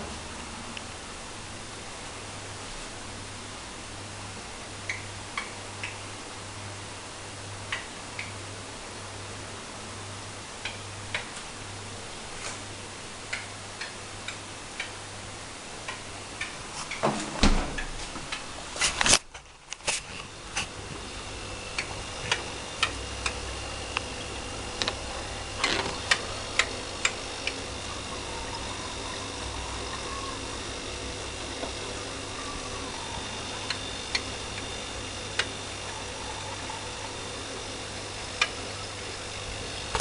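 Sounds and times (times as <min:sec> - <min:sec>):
low hum: 0:19.9 - 0:40.0.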